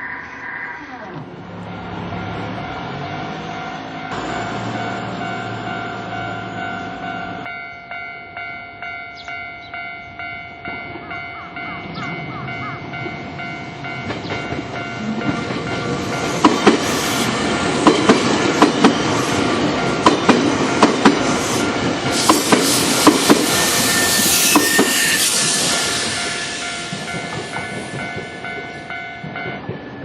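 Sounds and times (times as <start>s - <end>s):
level crossing warning bell: 1.7s - 17.3s, 17.9s - 22.2s, 23.5s - 30.0s
train wheels clacking on rails: 11.9s - 30.0s.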